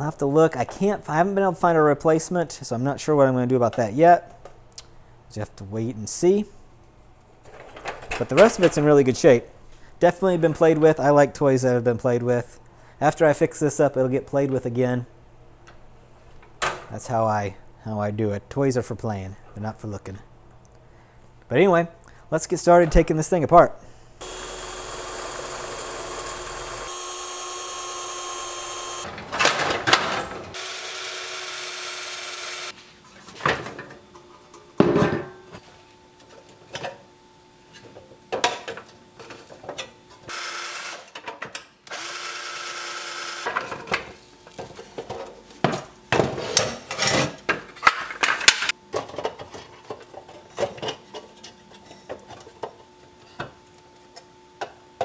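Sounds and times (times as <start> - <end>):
electric drill whining: 24.2 - 29.1, 30.5 - 32.8, 40.3 - 41.0, 41.9 - 43.5.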